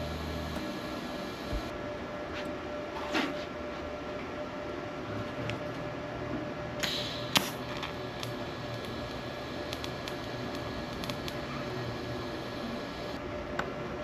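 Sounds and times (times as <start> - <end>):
welding hiss: 0.0 - 1.7, 6.8 - 13.2.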